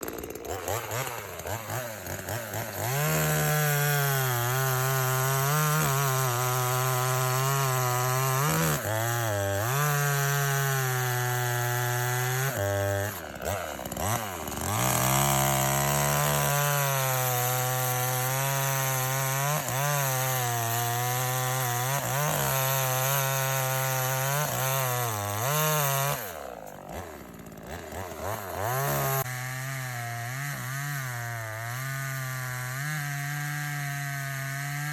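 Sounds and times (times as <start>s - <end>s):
chainsaw cutting wood: 0.0s - 34.9s.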